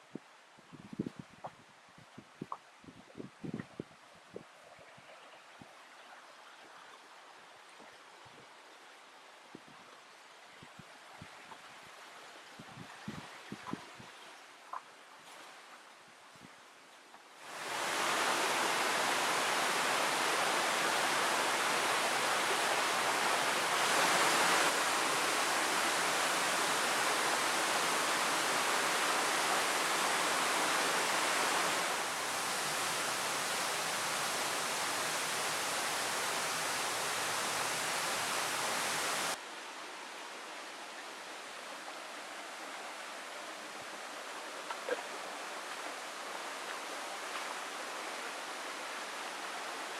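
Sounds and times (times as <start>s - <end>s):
waterfall rushing: 17.4s - 39.4s.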